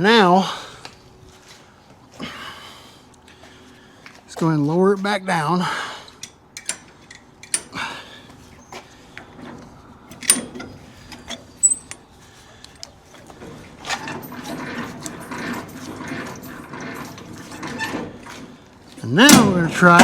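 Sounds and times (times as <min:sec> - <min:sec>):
gear and ratchet clatter: 0:06.1 - 0:07.8, 0:10.1 - 0:20.0
hand crank clicks: 0:06.1 - 0:07.8.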